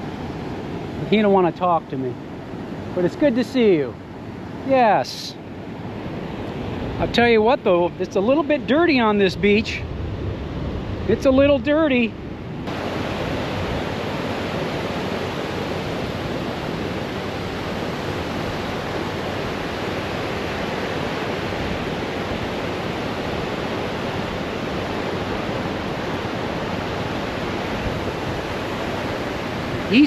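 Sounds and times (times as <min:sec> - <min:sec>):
surf breaking on beach: 0:08.6 - 0:30.0.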